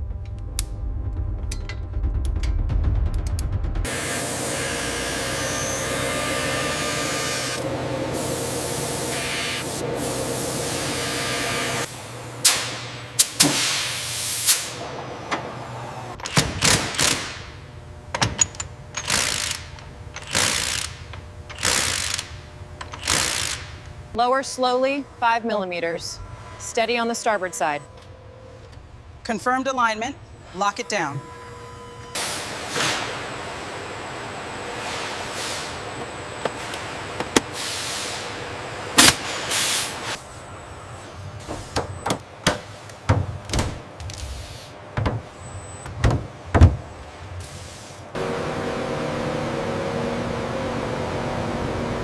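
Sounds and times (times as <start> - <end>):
knocks and clicks of parts: 16.2 - 23.9, 41.7 - 44.2, 45.0 - 46.8.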